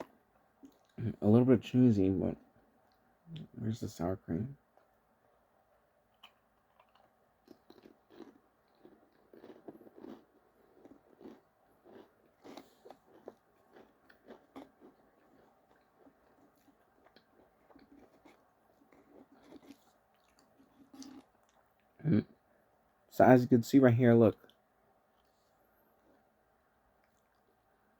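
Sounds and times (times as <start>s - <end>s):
chewing crisps: 0.0s - 1.2s, 6.1s - 22.0s.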